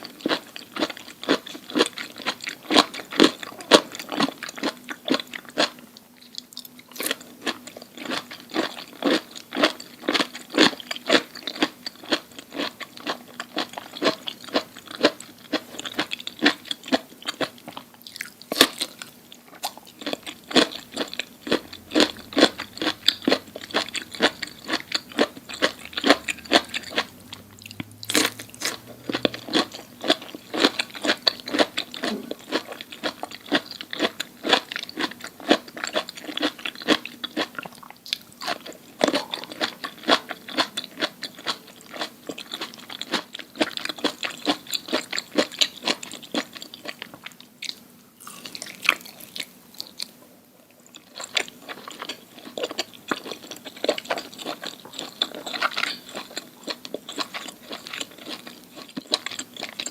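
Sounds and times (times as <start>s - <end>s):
crunchy food chewing: 0.0s - 59.9s.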